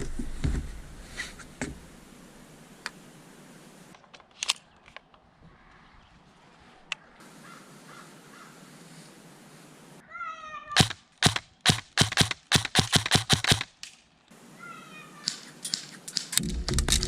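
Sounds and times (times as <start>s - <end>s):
cat meowing: 10.0s - 10.8s, 14.6s - 15.4s
airsoft gun shots: 10.8s - 13.7s.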